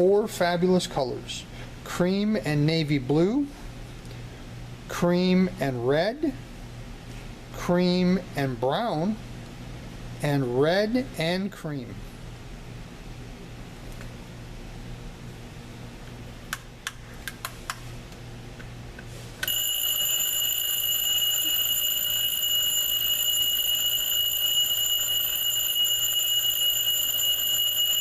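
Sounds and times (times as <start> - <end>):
alarm clock high-pitched tone: 19.4 - 28.0.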